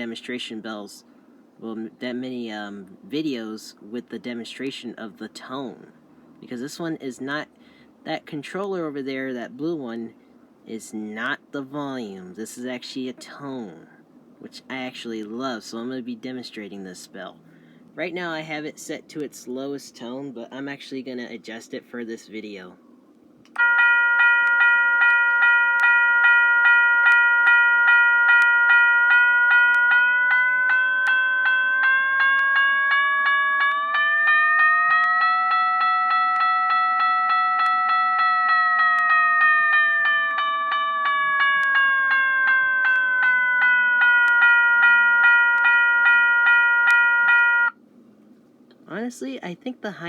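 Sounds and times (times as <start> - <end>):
electronic bell ringing: 23.6 - 47.8.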